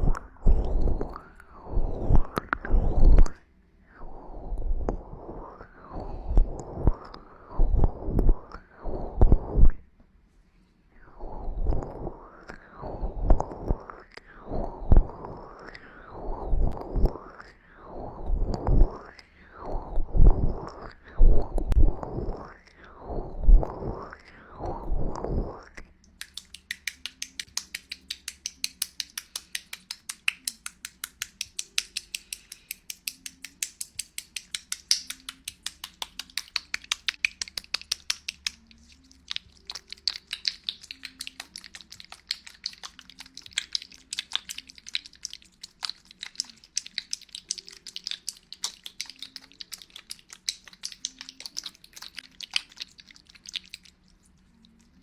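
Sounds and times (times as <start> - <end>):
tongue clicking: 13.4 - 14.4, 15.0 - 16.0, 16.7 - 17.7, 18.5 - 19.4, 20.5 - 23.0, 24.0 - 55.0.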